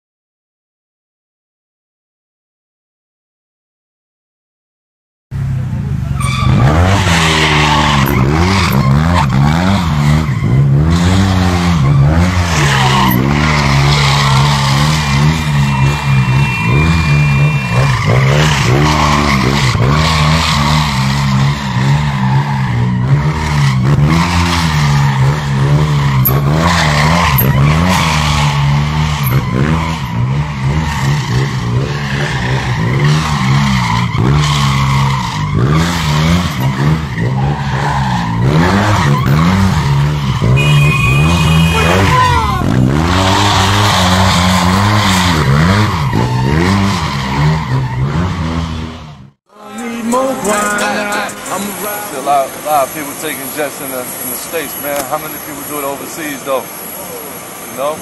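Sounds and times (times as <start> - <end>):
engines revving: 5.4 - 58.0.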